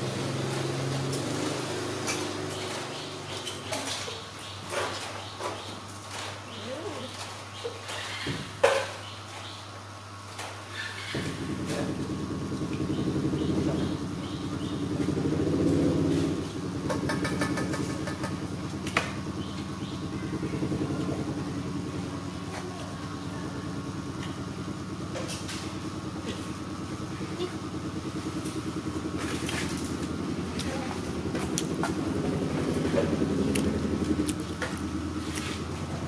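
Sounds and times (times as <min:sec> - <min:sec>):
engine running: 0:00.0 - 0:36.0.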